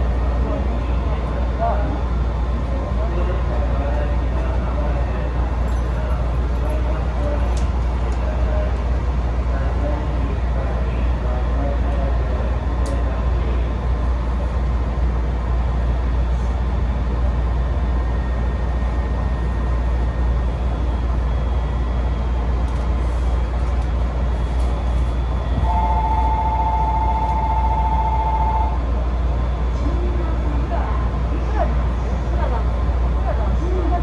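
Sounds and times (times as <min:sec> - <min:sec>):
train rumble inside carriage: 0:00.0 - 0:34.0
steady two-note tone: 0:25.6 - 0:28.8.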